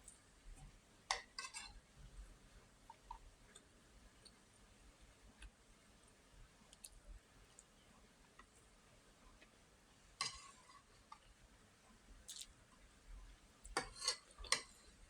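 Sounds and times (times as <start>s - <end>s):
faint eating clicks: 2.8s - 4.5s, 5.4s - 8.7s, 12.3s - 12.8s.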